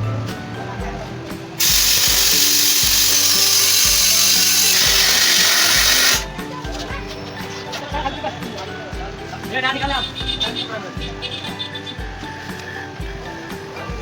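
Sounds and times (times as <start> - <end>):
music with steady beat: 0.0 - 14.0
loud air tool hiss: 1.6 - 6.3.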